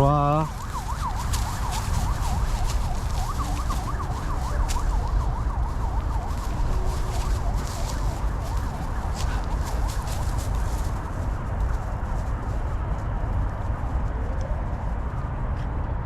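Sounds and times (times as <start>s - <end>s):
emergency siren yelping: 0.0s - 11.2s
wind rumble on microphone: 0.0s - 16.0s.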